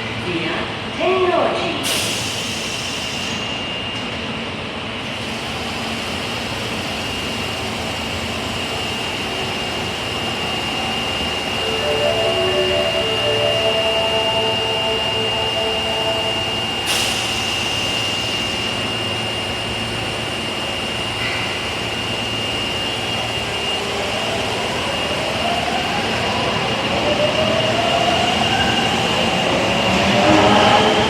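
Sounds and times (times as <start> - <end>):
high-pitched tone: 11.4 - 17.5.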